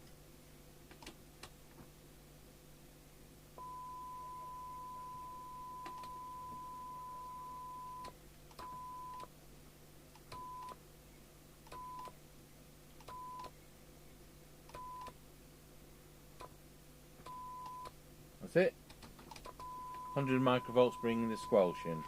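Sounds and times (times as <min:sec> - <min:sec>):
test tone through radio loudspeaker: 0:19.8 - 0:22.0.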